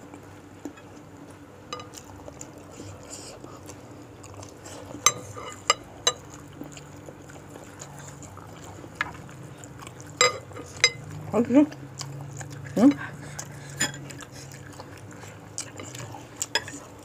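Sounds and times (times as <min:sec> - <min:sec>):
cutlery clinking against bowl: 0:01.7 - 0:02.0, 0:05.0 - 0:06.3, 0:10.2 - 0:11.1, 0:13.7 - 0:14.1, 0:15.8 - 0:16.8.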